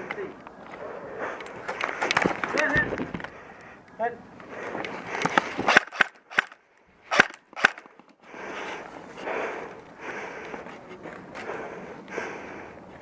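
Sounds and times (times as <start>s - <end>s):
airsoft guns firing: 5.3s - 7.9s.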